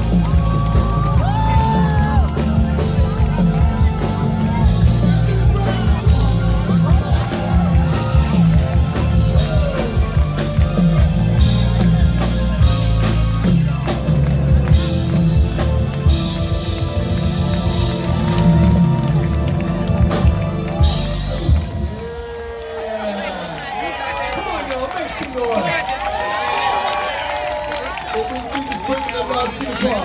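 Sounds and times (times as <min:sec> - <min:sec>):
gliding lead melody: 0:00.0 - 0:21.9
drum kit beat: 0:00.0 - 0:22.0
live band playing: 0:00.0 - 0:22.3.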